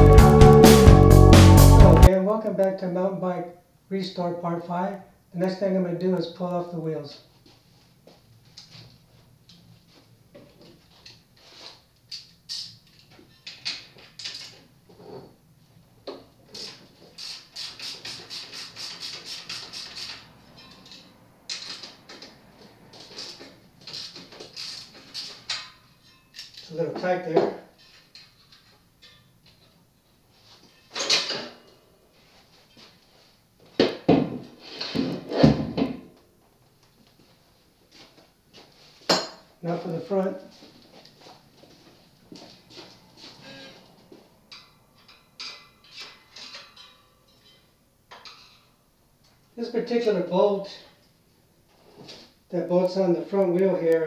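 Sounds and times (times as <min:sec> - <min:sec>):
scraping rasps: 0:16.5 - 0:22.0.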